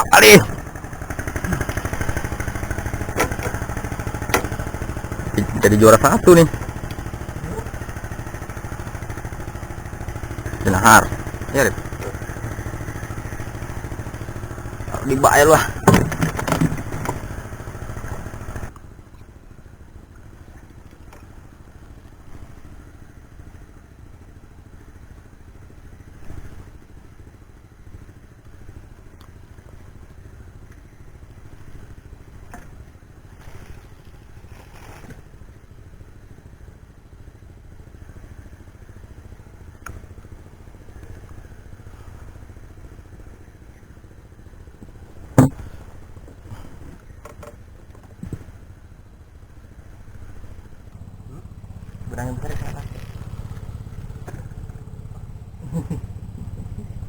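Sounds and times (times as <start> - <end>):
boat engine humming: 0.0 - 57.0
scattered clicks and knocks: 3.1 - 4.7.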